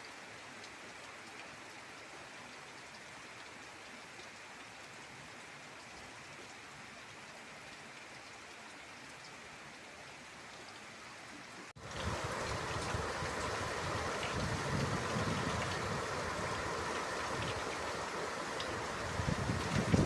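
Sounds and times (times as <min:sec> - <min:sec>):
heavy rain falling: 0:11.7 - 0:20.0.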